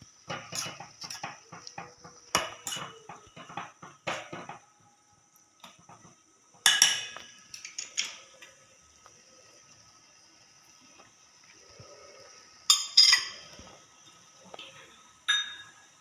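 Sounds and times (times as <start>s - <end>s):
spoon scraping a cooking pot: 0.3s - 4.6s.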